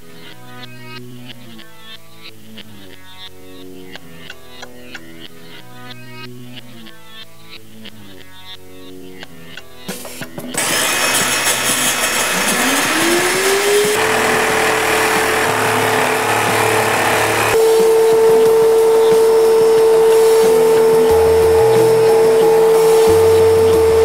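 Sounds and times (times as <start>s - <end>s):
vacuum cleaner motor whining: 10.6s - 24.0s.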